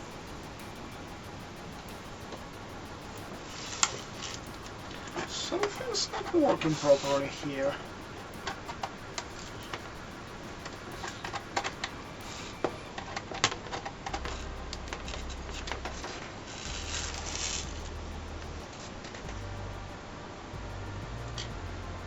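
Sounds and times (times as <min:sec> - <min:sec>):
laptop keys clicking: 0:00.0 - 0:12.9.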